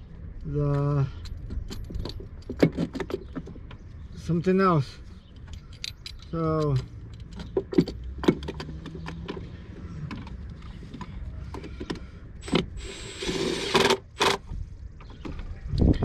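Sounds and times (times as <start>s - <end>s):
tools clicking and knocking on engine: 0.5s - 4.5s, 5.2s - 14.4s.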